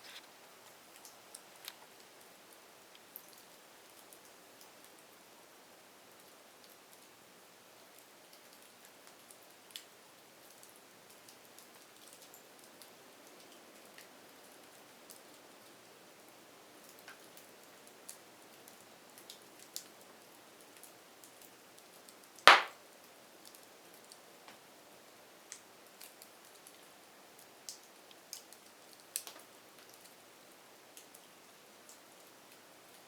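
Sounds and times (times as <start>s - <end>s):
faint hiss: 0.0s - 8.3s, 11.8s - 33.0s
firewood crackling: 22.4s - 22.8s
loud sharp pop: 22.5s - 22.8s.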